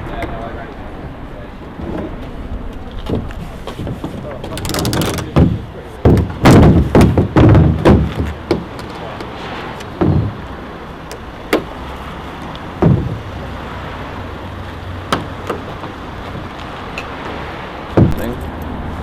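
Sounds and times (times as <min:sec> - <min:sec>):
steady low rumble: 0:00.0 - 0:05.9
irregular knocks and thumps: 0:03.0 - 0:11.8, 0:12.7 - 0:13.5, 0:15.1 - 0:18.4.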